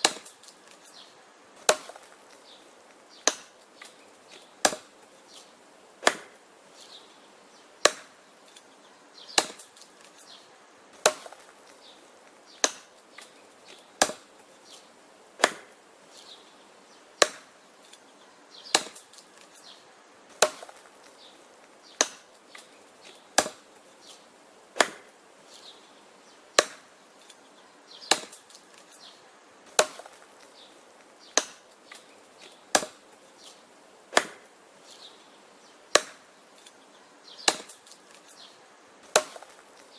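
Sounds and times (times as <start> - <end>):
wood chopping strikes: 0.0 - 1.0, 1.6 - 6.4, 7.8 - 8.7, 9.3 - 10.3, 11.0 - 15.8, 17.2 - 18.0, 18.7 - 25.2, 26.6 - 27.4, 28.0 - 29.1, 29.7 - 34.5, 35.9 - 36.7, 37.4 - 38.4, 39.0 - 39.9.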